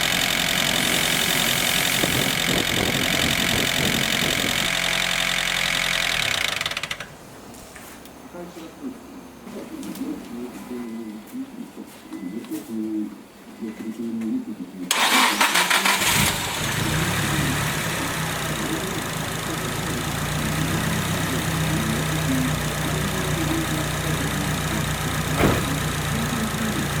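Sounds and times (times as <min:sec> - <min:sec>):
car engine starting and idling: 0:00.0 - 0:07.3, 0:14.9 - 0:27.0.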